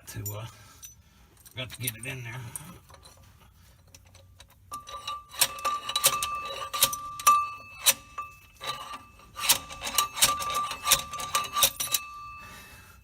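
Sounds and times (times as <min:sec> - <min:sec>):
metal tools clinking: 0:00.0 - 0:13.0
steady ringing tone: 0:04.7 - 0:13.0.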